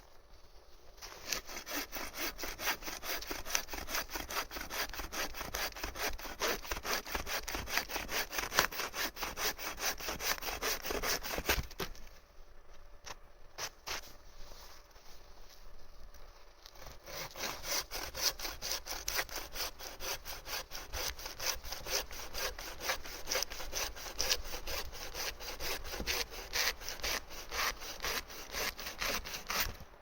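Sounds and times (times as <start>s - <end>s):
hand saw cutting wood: 1.0s - 11.9s, 16.7s - 29.9s.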